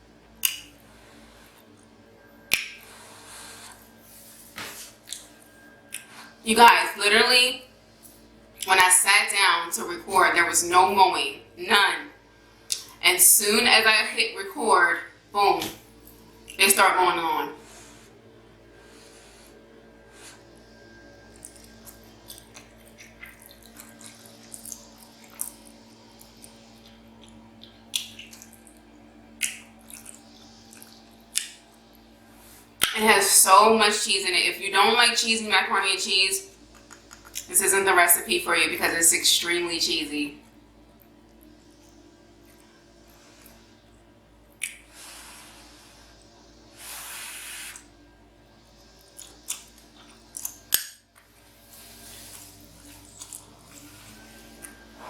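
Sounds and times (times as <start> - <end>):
faint steady hum: 0.0 - 55.0
person chewing with mouth clicks: 5.0 - 5.3, 12.7 - 13.0, 21.3 - 31.7, 36.6 - 37.5, 49.0 - 54.8
hissing mouth or breath noises: 44.9 - 48.0.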